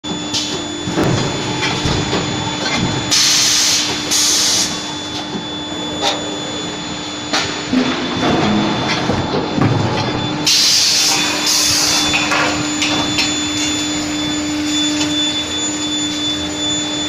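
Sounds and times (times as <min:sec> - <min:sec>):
steady machine hum: 0:00.0 - 0:17.0
machine knocks and clanks: 0:00.5 - 0:03.2, 0:07.3 - 0:10.5.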